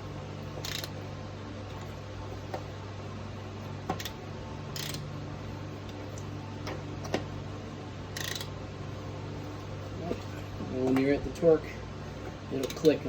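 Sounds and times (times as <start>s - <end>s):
steady low hum: 0.0s - 13.0s
torque wrench ratcheting: 0.6s - 1.0s, 4.0s - 5.0s, 8.1s - 8.5s, 12.6s - 13.0s.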